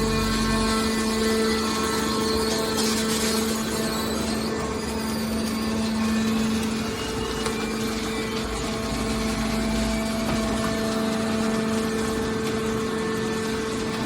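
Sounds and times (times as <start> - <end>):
hydraulic motor and pump humming: 0.0 - 14.0.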